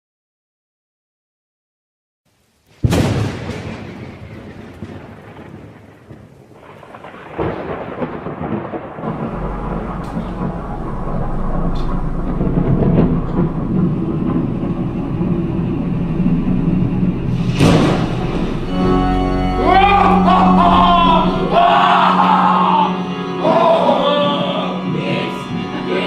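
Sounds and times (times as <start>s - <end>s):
storm rumble and hiss: 2.3s - 21.6s
thunder crack: 2.7s - 22.2s
low hum: 9.0s - 23.4s.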